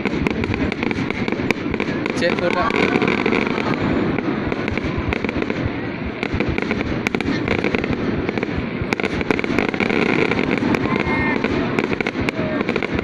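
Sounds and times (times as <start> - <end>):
fireworks crackling and banging: 0.0 - 13.0.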